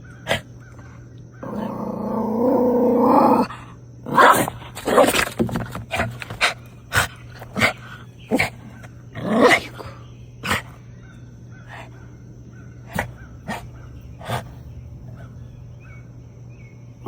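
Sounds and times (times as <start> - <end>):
low steady hum: 0.0 - 17.0
dog barking: 4.1 - 5.3, 6.9 - 14.5.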